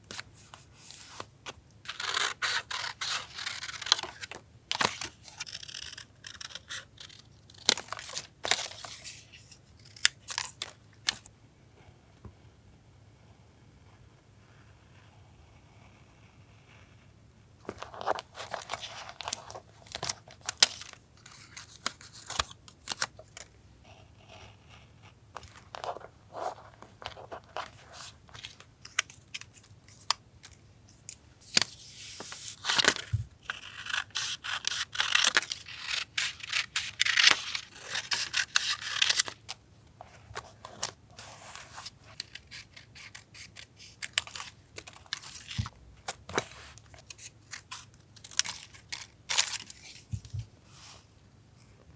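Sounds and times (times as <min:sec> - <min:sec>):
paper tearing: 0:01.9 - 0:07.2, 0:32.6 - 0:39.4
scissors snipping paper: 0:01.9 - 0:09.0, 0:32.6 - 0:39.5, 0:41.6 - 0:49.9
paper rustling: 0:25.4 - 0:39.5.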